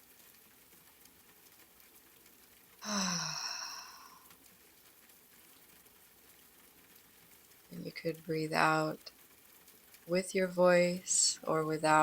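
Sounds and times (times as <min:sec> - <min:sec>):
person sighing: 0:02.8 - 0:04.3.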